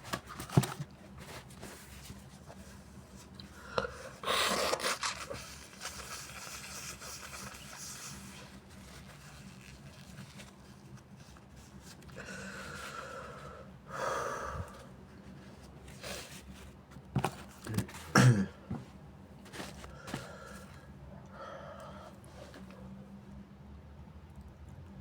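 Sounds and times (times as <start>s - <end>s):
person gasping breaths: 12.2s - 14.9s, 19.9s - 22.6s
person sneezing: 18.0s - 18.6s.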